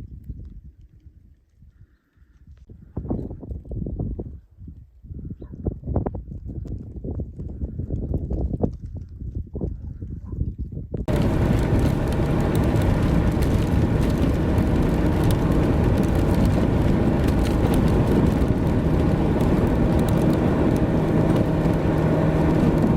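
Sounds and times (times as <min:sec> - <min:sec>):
vehicle engine and road rumble: 0:11.0 - 0:22.9.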